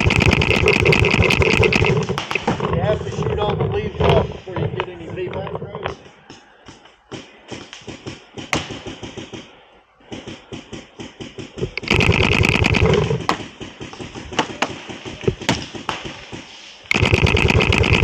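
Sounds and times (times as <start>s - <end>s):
paintball marker shots: 0.0s - 2.8s, 7.1s - 18.0s
rapid burst of paintball fire: 0.0s - 4.8s, 7.1s - 18.0s.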